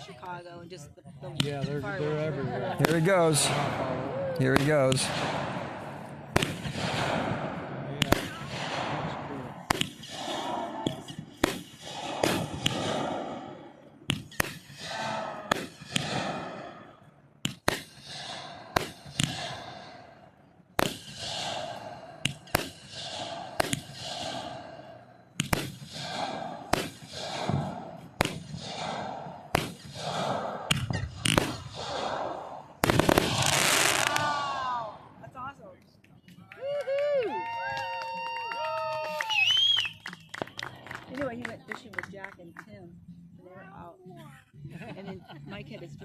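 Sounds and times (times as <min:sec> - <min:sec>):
fireworks bangs with crackling: 0:02.7 - 0:13.5, 0:14.1 - 0:16.7, 0:17.5 - 0:19.5, 0:20.8 - 0:21.7, 0:25.4 - 0:34.6.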